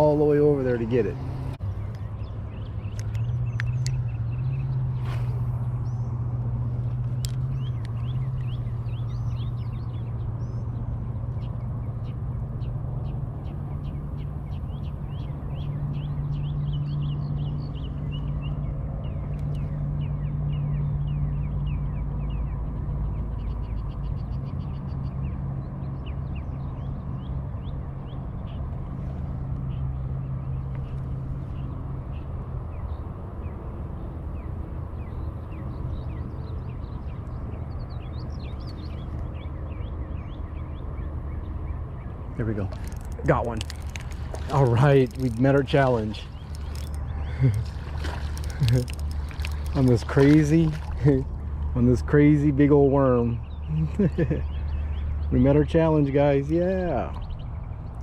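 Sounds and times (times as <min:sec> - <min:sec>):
birds chirping: 0:00.0 - 0:58.0
engine running with low hum: 0:00.0 - 0:58.0.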